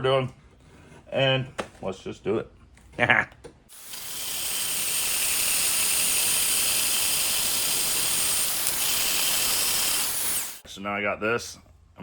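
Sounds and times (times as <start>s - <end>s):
power tool high whine: 3.7s - 10.6s.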